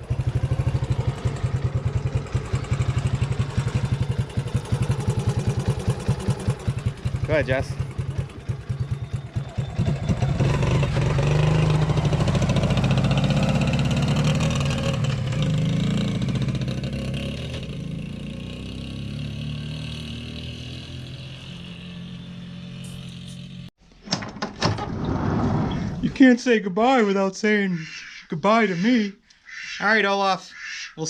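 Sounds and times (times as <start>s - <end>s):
quad bike engine revving: 0.0s - 23.7s.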